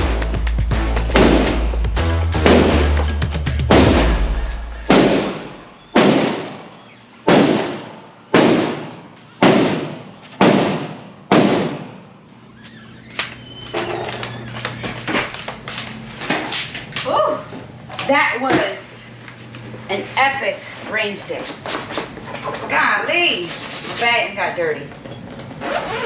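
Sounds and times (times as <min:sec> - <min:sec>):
echoing gunshots: 0:03.7 - 0:06.7, 0:07.3 - 0:12.0.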